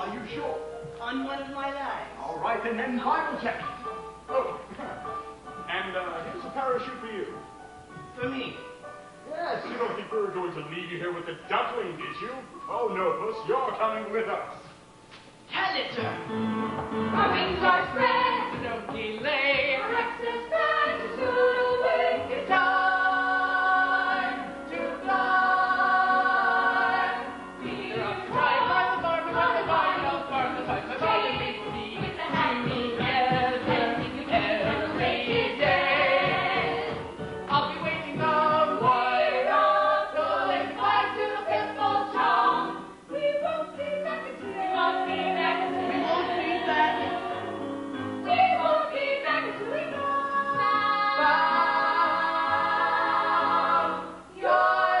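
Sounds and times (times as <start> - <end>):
musical accompaniment: 0.0 - 55.0
ensemble singing in chorus: 16.3 - 55.0.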